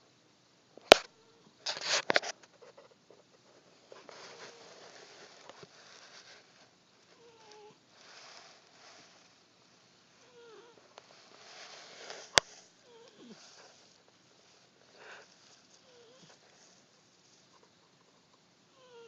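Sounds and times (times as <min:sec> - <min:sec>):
short rustle: 0:01.6 - 0:02.7, 0:03.5 - 0:18.0
pet snoring softly: 0:07.1 - 0:09.4, 0:10.2 - 0:19.0.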